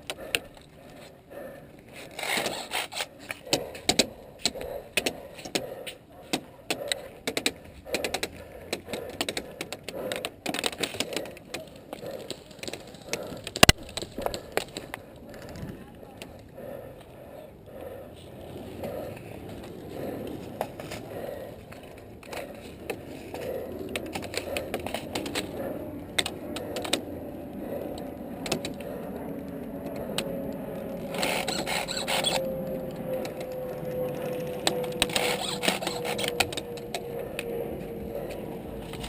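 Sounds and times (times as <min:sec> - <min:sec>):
sharp clicks and knocks: 0:28.4 - 0:28.9.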